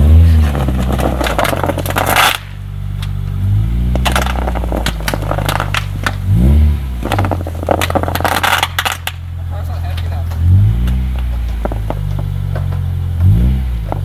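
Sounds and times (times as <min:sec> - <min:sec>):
car engine revving: 0:00.0 - 0:14.0
tyres scraping on bubble wrap: 0:00.1 - 0:02.5, 0:04.0 - 0:06.2, 0:07.0 - 0:09.2.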